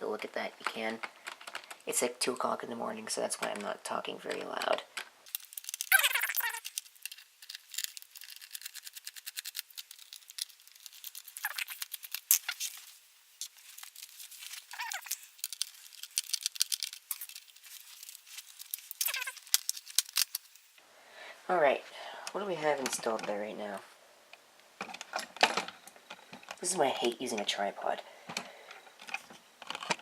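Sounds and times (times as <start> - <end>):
short squeaks falling in pitch: 5.8 - 6.6, 19.0 - 19.4.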